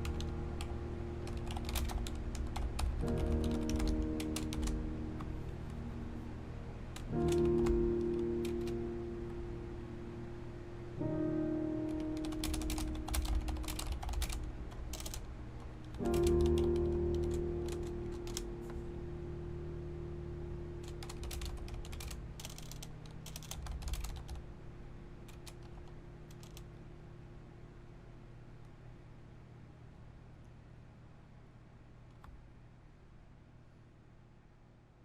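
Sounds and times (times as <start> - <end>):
mechanical keyboard key clicks: 11.9 - 15.2, 15.9 - 18.5, 20.8 - 24.4, 25.3 - 26.6.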